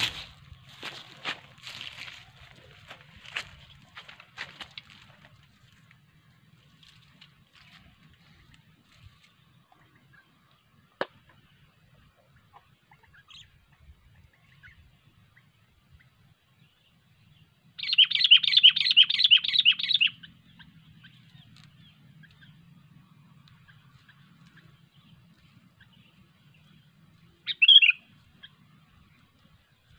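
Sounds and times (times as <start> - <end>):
faint bird chirps: 6.6 - 29.9.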